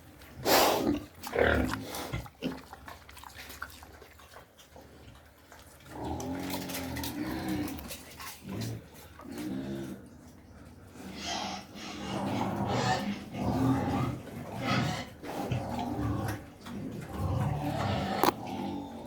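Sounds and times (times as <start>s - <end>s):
pigs grunting and whining: 0.2s - 19.0s
pig squealing: 11.0s - 16.2s, 17.2s - 18.7s.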